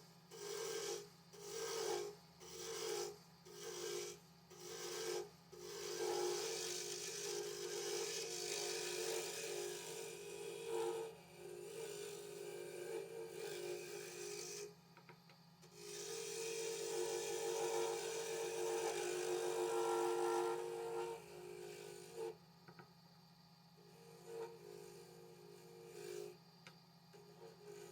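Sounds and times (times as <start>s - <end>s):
lathe hum: 3.8s - 14.7s, 15.8s - 22.3s.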